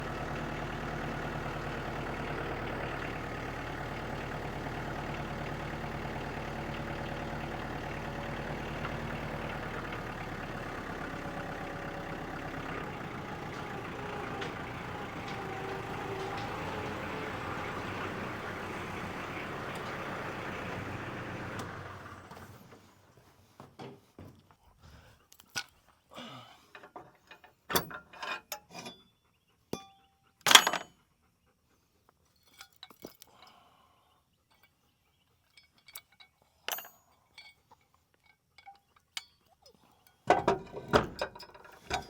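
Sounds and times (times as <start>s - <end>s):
engine idling: 0.0s - 23.0s.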